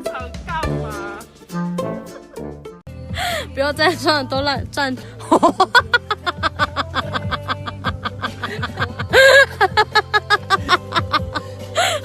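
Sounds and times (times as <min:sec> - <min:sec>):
background music: 0:00.0 - 0:12.0
person laughing hard: 0:05.2 - 0:12.0.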